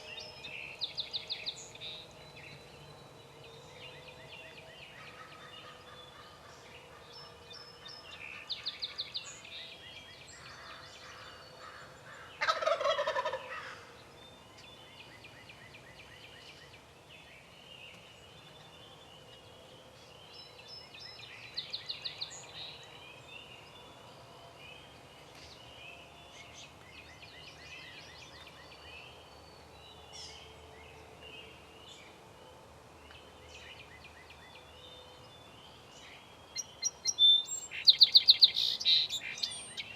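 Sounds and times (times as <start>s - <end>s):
birds singing and chirping: 0.0s - 39.9s
turkey gobbling: 12.4s - 13.9s.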